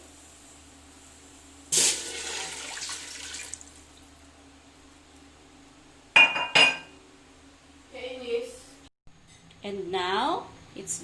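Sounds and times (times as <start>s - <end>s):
water splashing into hot pot: 1.7s - 4.1s.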